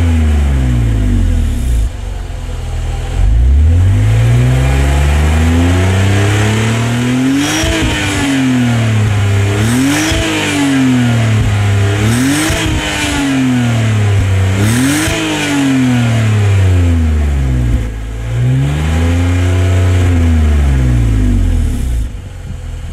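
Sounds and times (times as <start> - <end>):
car engine revving: 0.0 - 22.9.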